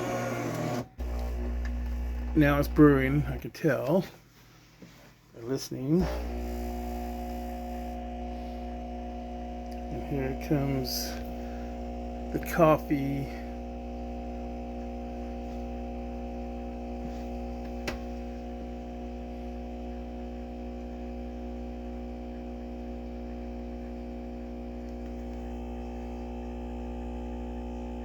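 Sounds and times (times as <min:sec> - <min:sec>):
espresso machine pump humming: 0:00.0 - 0:03.4, 0:06.0 - 0:28.0.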